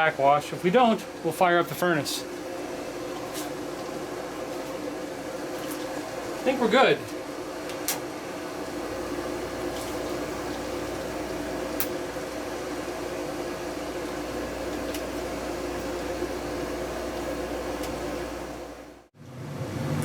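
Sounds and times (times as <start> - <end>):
pool pump humming: 8.1 - 19.1.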